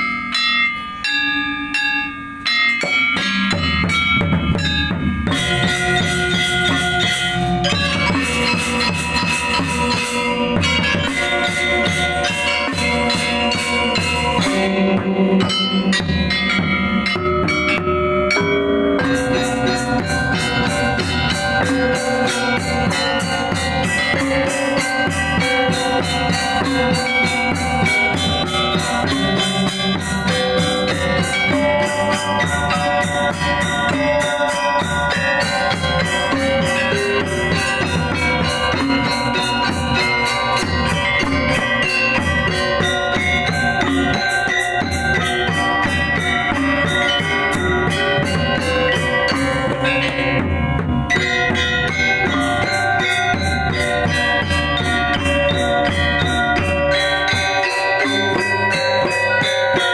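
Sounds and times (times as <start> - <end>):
drums: 0.0 - 59.9
gamelan metallophones and gongs: 0.0 - 59.9.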